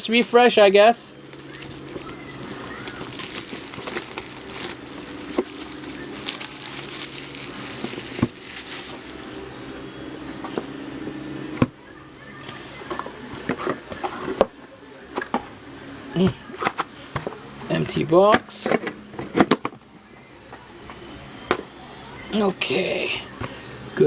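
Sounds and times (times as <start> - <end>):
shrink wrap crinkling and tearing: 1.1 - 9.4.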